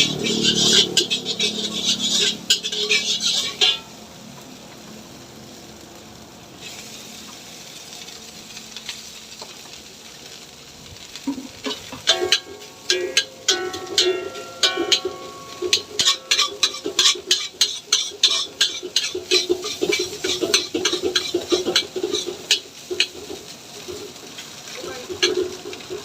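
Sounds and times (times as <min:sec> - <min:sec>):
metal spatula scraping wok: 0:00.0 - 0:04.0, 0:06.6 - 0:07.2, 0:11.6 - 0:26.0
frying sizzle: 0:00.0 - 0:26.0.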